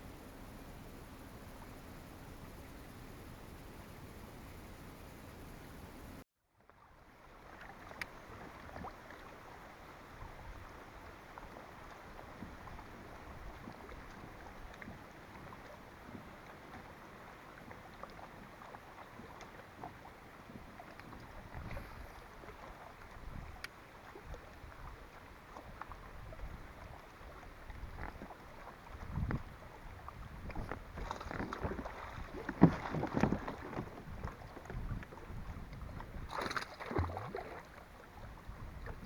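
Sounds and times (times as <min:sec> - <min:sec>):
water lapping: 0:06.8 - 0:39.0
wind noise: 0:20.5 - 0:22.5, 0:28.9 - 0:37.5.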